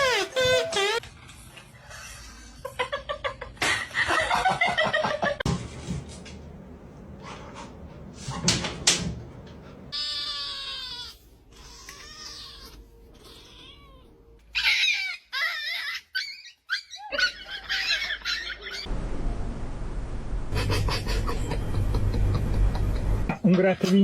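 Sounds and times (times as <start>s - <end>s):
dog whining and yelping: 14.4s - 18.5s.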